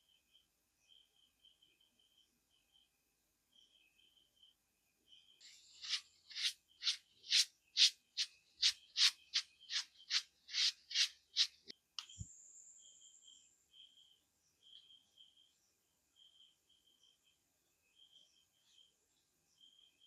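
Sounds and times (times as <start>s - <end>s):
rhythmic rubbing strokes: 5.5s - 11.7s.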